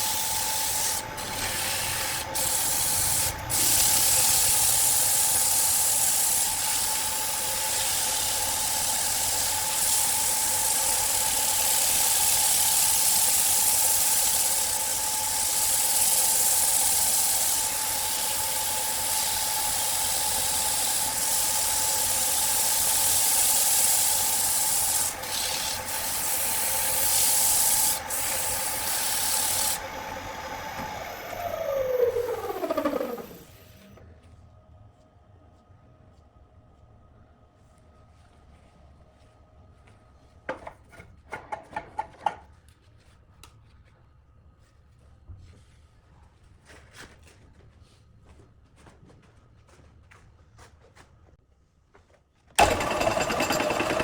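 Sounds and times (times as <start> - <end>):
wood lathe whine: 0.0 - 33.9, 52.6 - 54.0
hiss of rubbing on spinning wood: 2.2 - 7.0, 7.6 - 14.8, 15.4 - 29.8.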